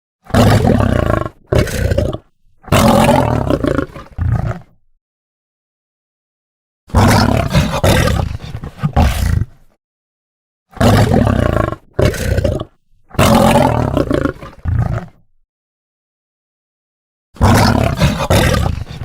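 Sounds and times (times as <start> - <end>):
lion roaring: 0.2 - 4.8, 6.9 - 9.8, 10.7 - 15.3, 17.4 - 19.0.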